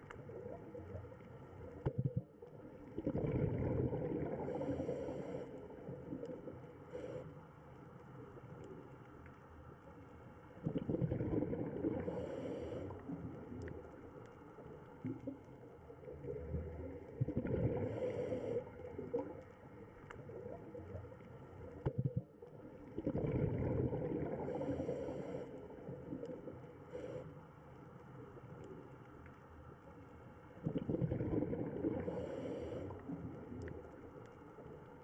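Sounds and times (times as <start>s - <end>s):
bubbling exhaled air: 2.8s - 7.3s, 10.6s - 13.8s, 16.1s - 19.4s, 22.9s - 27.2s, 30.6s - 33.6s
diver breathing through regulator: 4.4s - 5.7s, 12.0s - 13.1s, 17.7s - 18.9s, 24.4s - 25.7s, 32.0s - 33.1s.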